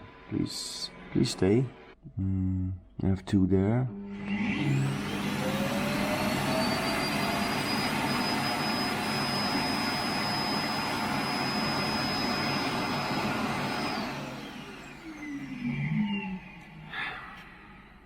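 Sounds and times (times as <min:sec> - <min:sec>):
electric fan motor whining: 0:04.0 - 0:17.1.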